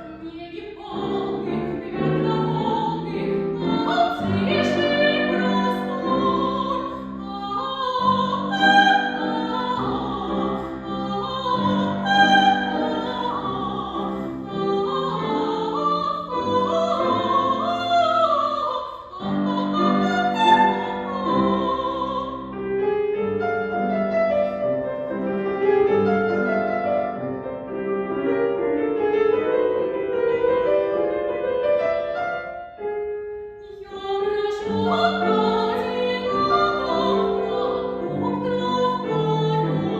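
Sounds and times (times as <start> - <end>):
woman singing opera: 0.0 - 22.8, 33.6 - 39.9
piano: 0.0 - 39.9.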